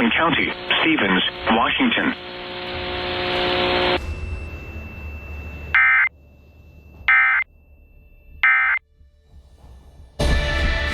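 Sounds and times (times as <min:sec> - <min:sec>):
low radio hiss: 0:00.0 - 0:04.0
buzzy digital data tones: 0:00.0 - 0:08.8
faint steady high tone: 0:04.0 - 0:08.4.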